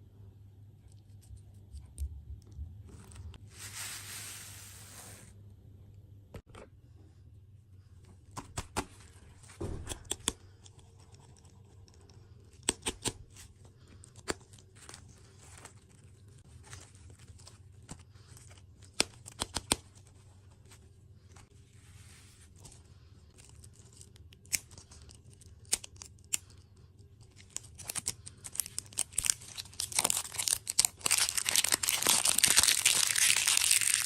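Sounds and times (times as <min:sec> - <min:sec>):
sweet wrappers crackling: 0:23.3 - 0:34.0
packaging crinkling: 0:27.2 - 0:34.0.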